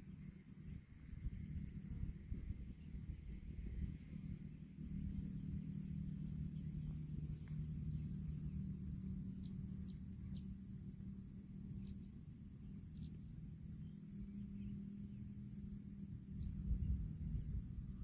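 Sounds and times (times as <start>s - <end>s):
insects chirring: 0.0s - 18.0s
low steady hum and rumble: 0.0s - 18.0s
faint sharp ticks: 7.4s - 7.7s, 12.9s - 13.2s.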